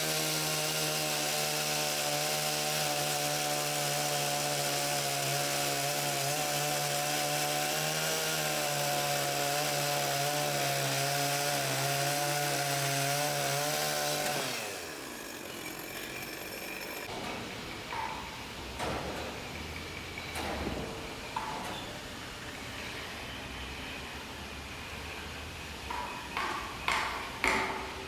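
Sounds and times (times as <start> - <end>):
power saw cutting wood: 0.0 - 17.1
saw motor winding down: 0.0 - 17.1.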